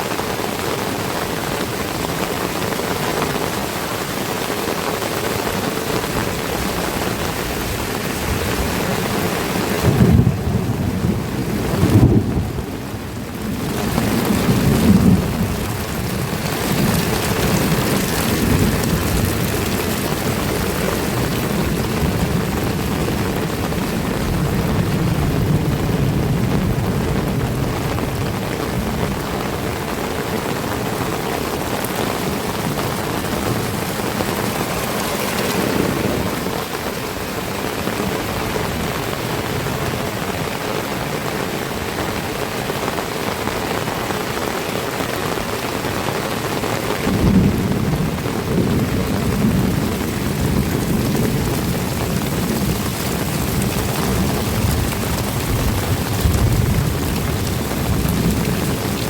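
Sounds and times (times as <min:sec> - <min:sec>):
heavy rain pouring: 0:00.0 - 0:59.0
low rumble of thunder: 0:06.1 - 0:37.0, 0:47.0 - 0:59.0.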